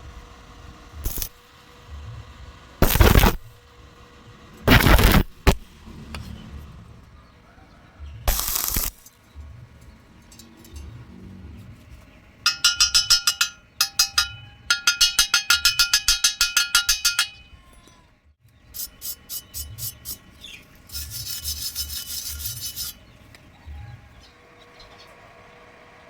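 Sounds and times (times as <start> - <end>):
metal-on-metal scraping strokes: 1.0 - 1.4, 8.3 - 9.2, 10.2 - 17.4, 18.7 - 23.2.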